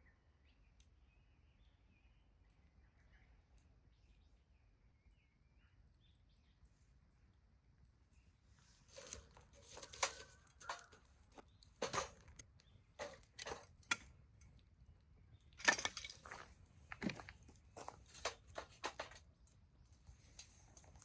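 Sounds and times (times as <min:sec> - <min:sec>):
small objects clicking and rustling: 0:08.9 - 0:14.6, 0:15.4 - 0:21.0.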